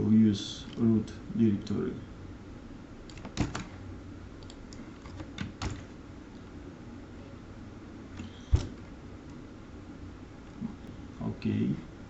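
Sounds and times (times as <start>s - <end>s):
keyboard keystrokes clicking: 3.1s - 3.8s, 4.4s - 5.9s.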